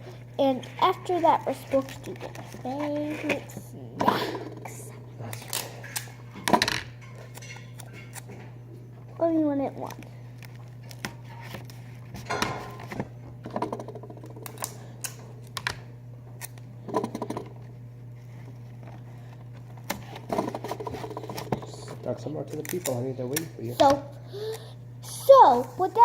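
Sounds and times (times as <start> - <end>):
tape and plastic crackling: 0.5 - 3.8, 9.8 - 15.8, 18.4 - 24.6.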